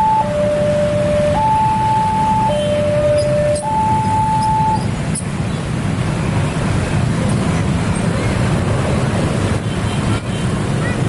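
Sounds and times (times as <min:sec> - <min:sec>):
level crossing alarm: 0:00.0 - 0:04.8.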